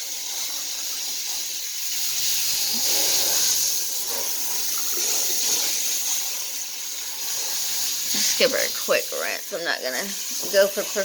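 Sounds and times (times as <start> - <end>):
water spray hissing: 0.0 - 11.0.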